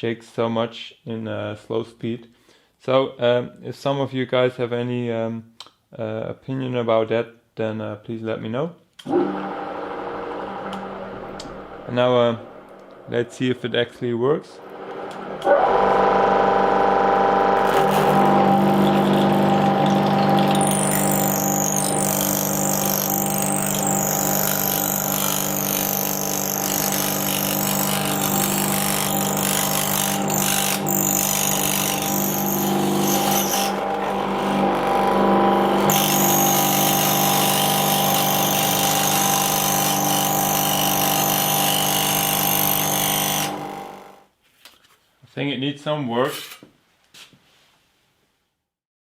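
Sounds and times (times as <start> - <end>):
electric motor hum: 9.1 - 13.1, 14.6 - 44.2.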